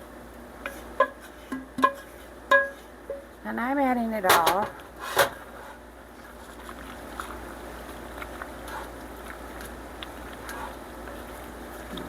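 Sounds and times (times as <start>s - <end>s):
sauce simmering: 4.8s - 12.0s.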